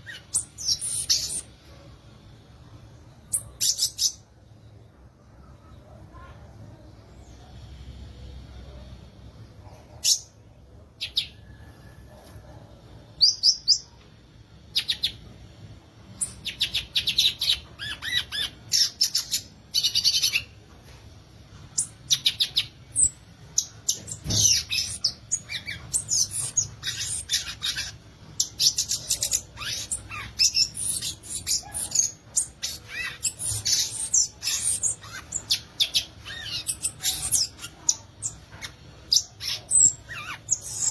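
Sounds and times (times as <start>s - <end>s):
bird singing twittering phrases: 0.0s - 1.7s, 14.7s - 15.3s, 16.1s - 20.6s, 21.8s - 40.9s.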